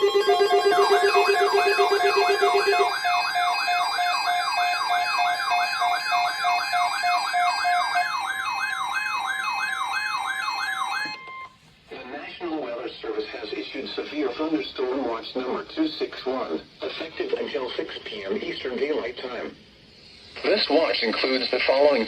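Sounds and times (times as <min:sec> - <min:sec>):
fast warbling siren: 0:00.0 - 0:11.5
steady and dashed beeping tones: 0:00.0 - 0:11.5.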